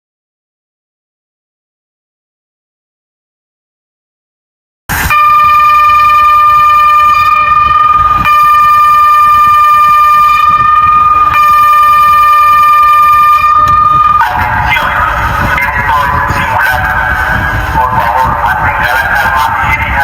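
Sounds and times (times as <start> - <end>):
siren steady tone: 4.9 - 20.0.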